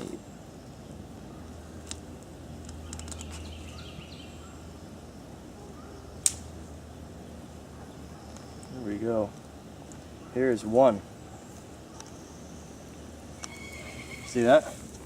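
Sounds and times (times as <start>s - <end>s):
sharp snap: 6.2s - 6.5s.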